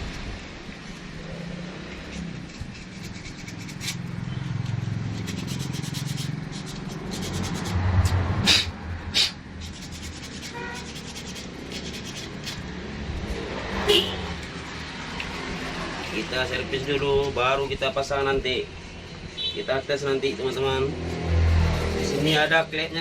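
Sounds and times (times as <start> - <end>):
scrubbing metal by hand: 1.9 - 12.7.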